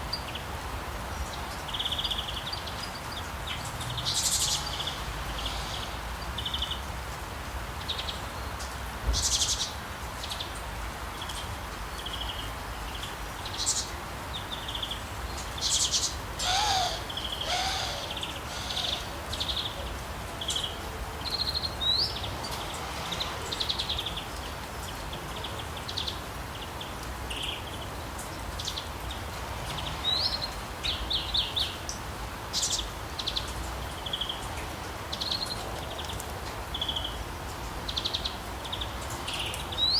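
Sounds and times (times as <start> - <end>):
rain hissing: 0.4 - 35.6
small birds chirping: 11.2 - 22.8.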